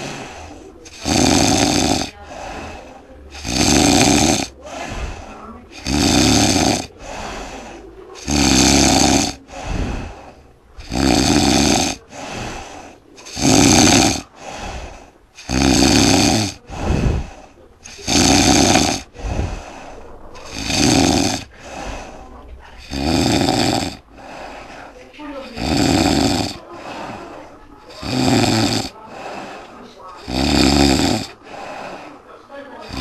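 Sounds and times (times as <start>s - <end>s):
man snoring loudly: 0.0s - 7.3s, 8.2s - 10.2s, 10.8s - 19.7s, 20.4s - 22.0s, 22.8s - 24.0s, 25.5s - 26.6s, 27.9s - 29.3s, 30.2s - 31.8s
quiet breath out: 0.0s - 33.0s.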